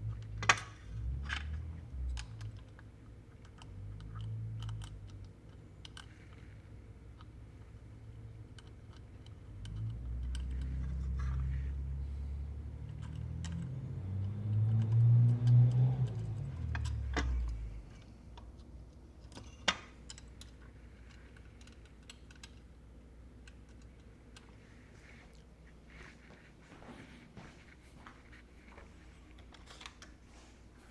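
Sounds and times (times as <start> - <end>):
clicks and taps of parts handled: 0.0 - 7.8, 8.4 - 11.9, 12.6 - 24.7.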